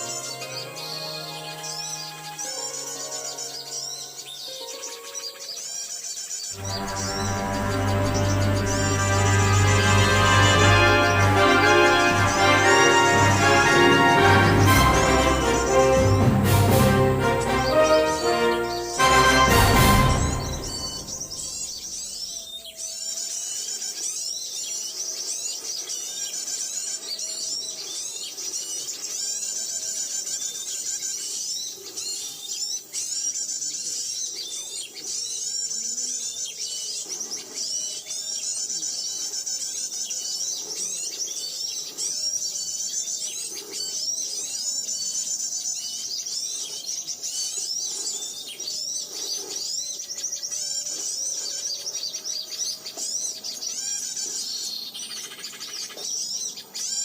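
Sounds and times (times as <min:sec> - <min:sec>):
faint background music: 0:00.0 - 0:22.5
small birds chirping: 0:00.0 - 0:57.0.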